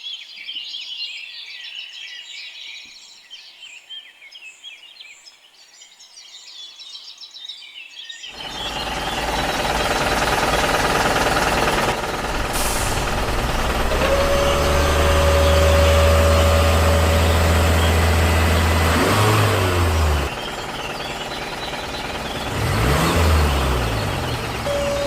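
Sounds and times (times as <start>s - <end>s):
vehicle engine running and revving: 8.4s - 25.0s.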